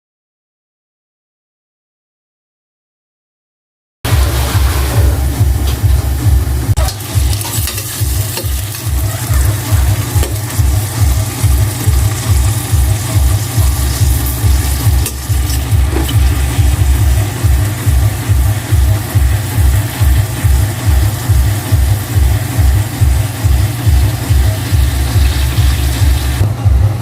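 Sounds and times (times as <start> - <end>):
low pulsing bass beat: 4.1 - 27.0
shrimp sizzling in a pan: 6.9 - 26.4.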